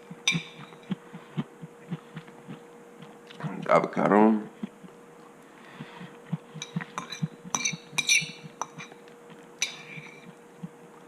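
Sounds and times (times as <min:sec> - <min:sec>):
cutlery clinking against dish: 0:06.6 - 0:09.0, 0:09.6 - 0:10.3.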